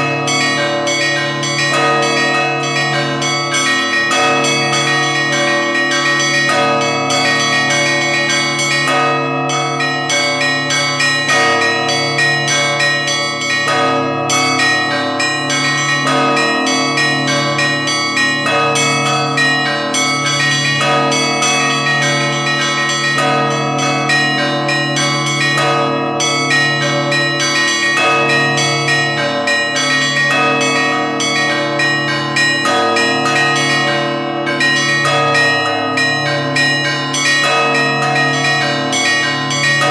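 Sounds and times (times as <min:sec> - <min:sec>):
deep bell tolling: 0:00.0 - 0:39.9.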